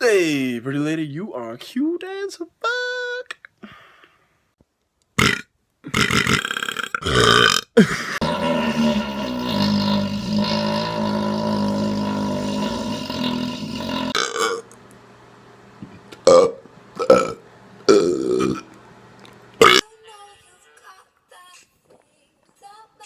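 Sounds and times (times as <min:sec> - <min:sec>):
man belching: 0:05.2 - 0:14.8, 0:16.2 - 0:18.8, 0:19.6 - 0:19.8.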